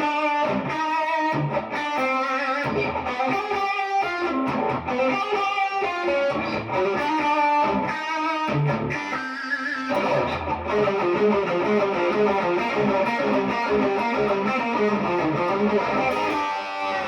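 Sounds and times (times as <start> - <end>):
electric guitar picked notes: 0.0 - 17.0.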